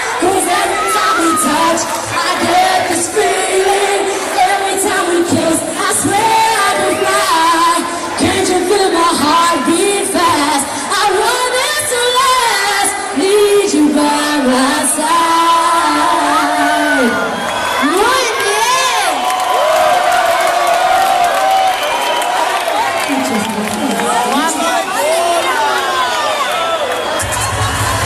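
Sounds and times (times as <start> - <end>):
live dance-pop music with singing: 0.0 - 19.2, 22.3 - 28.0
crowd noise: 0.0 - 28.0.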